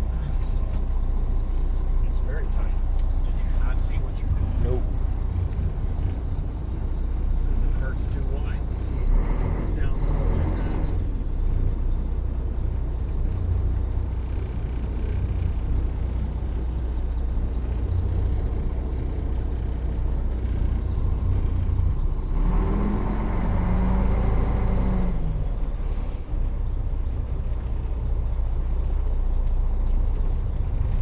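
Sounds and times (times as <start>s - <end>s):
heavy vehicle engine rumbling: 0.0s - 31.0s.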